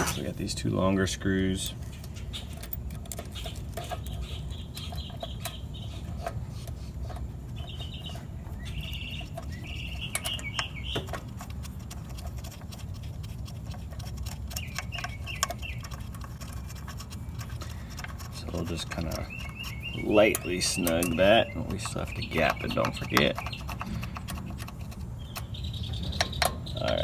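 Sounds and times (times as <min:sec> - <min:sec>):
birds chirping: 0:00.0 - 0:27.0
low steady hum: 0:00.0 - 0:27.0
screwdriver and screws clicking: 0:17.9 - 0:26.7.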